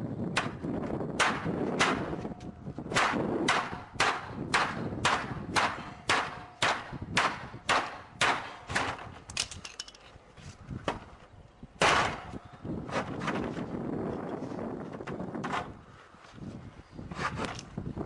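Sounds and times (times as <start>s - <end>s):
garage door being struck: 11.8s - 12.4s.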